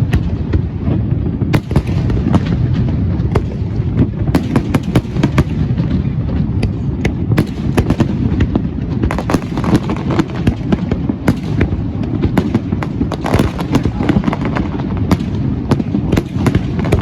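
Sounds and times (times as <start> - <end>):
fireworks cracks: 0.0 - 17.0.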